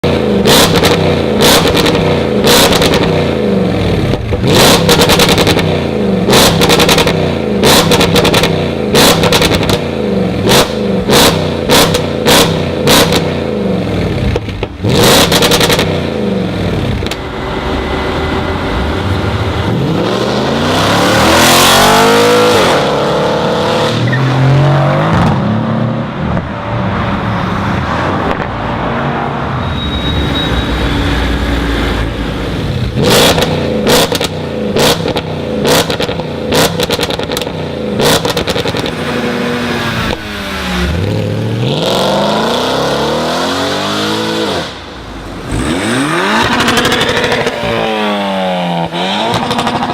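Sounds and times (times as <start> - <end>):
car engine revving: 0.0 - 29.6, 30.2 - 49.9
car accelerating hard: 14.8 - 26.2, 31.4 - 49.9.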